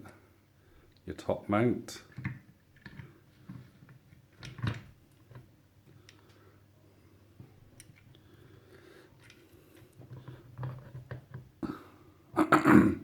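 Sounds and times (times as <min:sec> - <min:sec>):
clicks and knocks of parts handled: 0:02.1 - 0:06.4, 0:07.7 - 0:08.2, 0:09.2 - 0:11.5.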